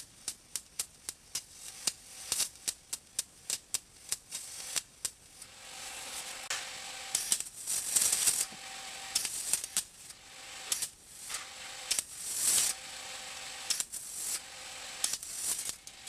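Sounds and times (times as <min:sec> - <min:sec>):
welder crackling: 0:00.1 - 0:16.0.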